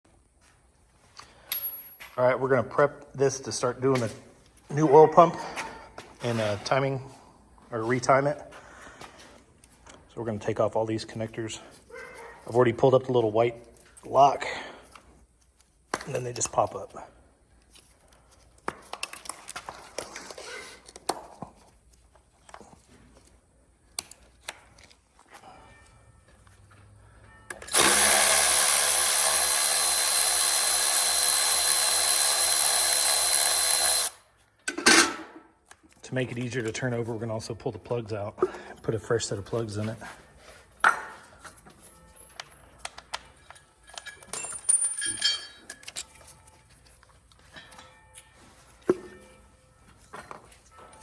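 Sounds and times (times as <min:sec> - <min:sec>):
metallic clinks: 0:41.2 - 0:51.0.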